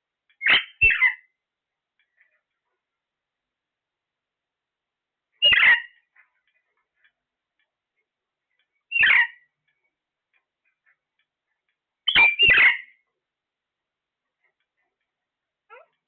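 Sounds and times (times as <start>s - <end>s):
parrot calling loudly: 0.4s - 1.3s, 5.4s - 6.0s, 8.9s - 9.4s, 12.1s - 13.0s.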